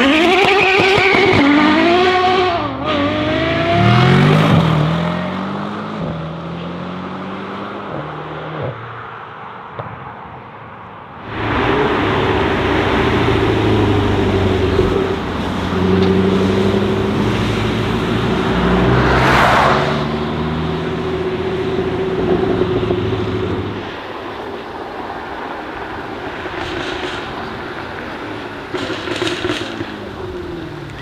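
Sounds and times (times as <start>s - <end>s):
car engine revving: 0.0s - 5.9s, 11.2s - 24.0s.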